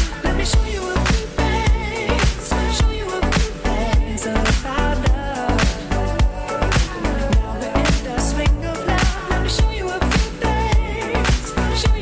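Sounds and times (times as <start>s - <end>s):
funk-pop music with steady beat: 0.0s - 12.0s.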